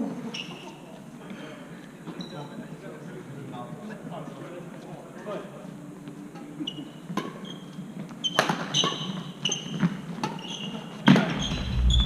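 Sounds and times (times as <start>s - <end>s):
low hum: 11.3s - 12.0s.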